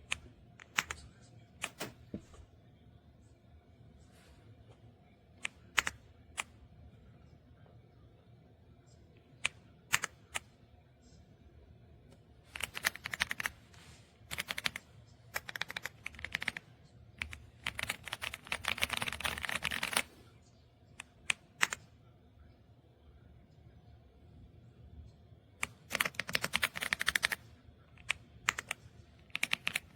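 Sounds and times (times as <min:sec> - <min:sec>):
mechanical keyboard typing: 0:00.0 - 0:01.0, 0:05.4 - 0:06.5, 0:09.4 - 0:10.4, 0:12.5 - 0:13.6, 0:14.3 - 0:16.6, 0:17.2 - 0:20.1, 0:21.0 - 0:21.8, 0:25.6 - 0:27.4, 0:28.0 - 0:29.9.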